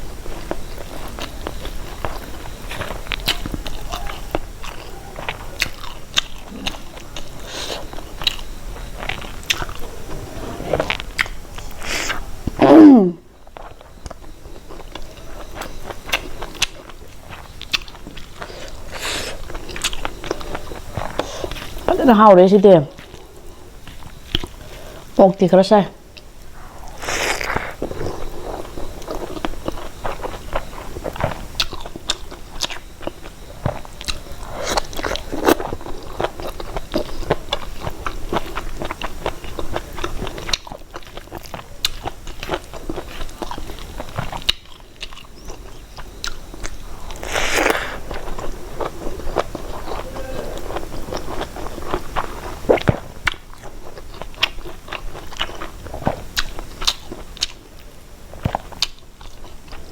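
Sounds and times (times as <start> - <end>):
chewing and crunching: 0.0 - 12.6, 13.3 - 25.2, 26.1 - 59.9
wet mouth clicks: 47.2 - 48.0.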